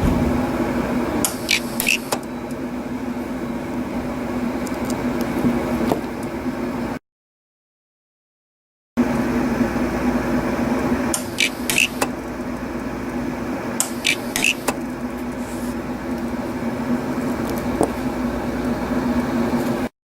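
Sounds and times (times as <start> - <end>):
steady electrical hum: 0.0 - 4.5.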